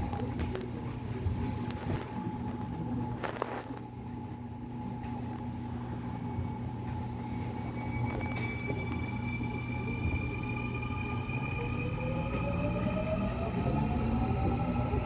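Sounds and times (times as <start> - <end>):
train motor hum: 9.4 - 15.0.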